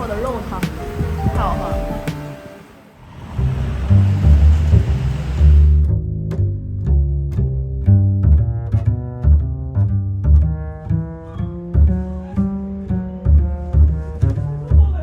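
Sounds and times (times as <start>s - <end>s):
low bass line: 0.0s - 2.6s, 3.2s - 15.0s
melody of short pitched notes: 0.7s - 2.9s.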